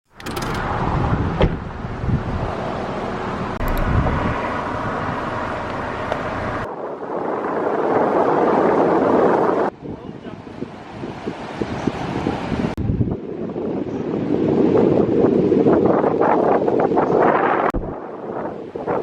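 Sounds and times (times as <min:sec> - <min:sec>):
vehicle rumble: 0:00.1 - 0:06.7
wind on microphone: 0:00.2 - 0:19.0.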